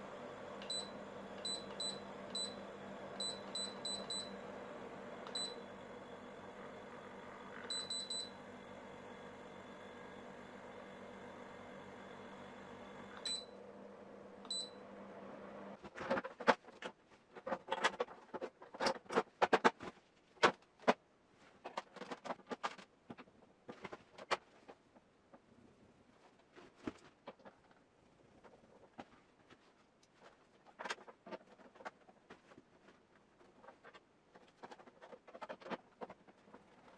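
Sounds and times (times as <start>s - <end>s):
dehumidifier humming: 0.0s - 15.8s.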